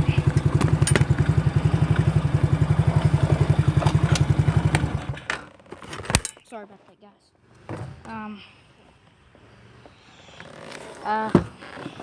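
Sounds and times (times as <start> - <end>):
engine idling: 0.0 - 5.4.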